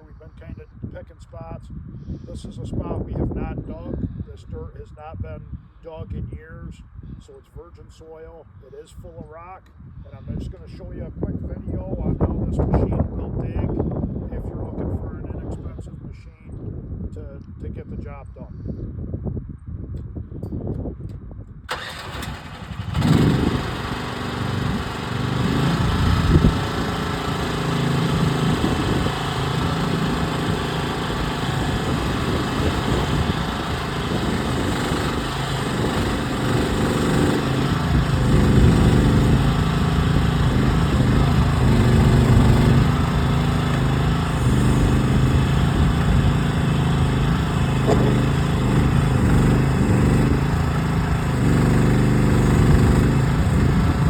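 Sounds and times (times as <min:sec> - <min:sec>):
excavator engine running: 0:21.7 - 0:54.0.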